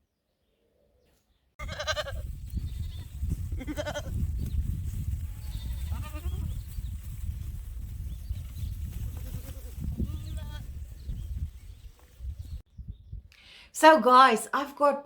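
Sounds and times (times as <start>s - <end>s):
goats bleating: 1.6s - 2.2s, 2.8s - 4.2s, 5.3s - 6.6s, 9.2s - 10.6s.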